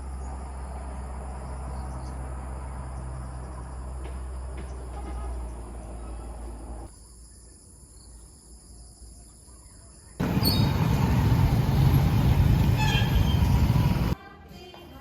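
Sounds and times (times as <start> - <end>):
loud traffic-like rumbling: 0.0 - 6.9, 10.2 - 14.2.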